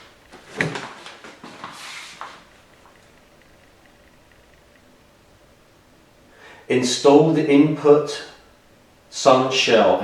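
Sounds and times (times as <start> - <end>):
scraping rustle: 0.3 - 3.1.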